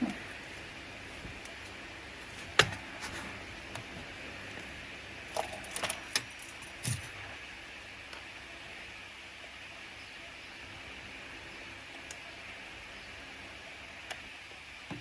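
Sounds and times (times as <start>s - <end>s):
small metal tools clinking: 5.3s - 7.2s.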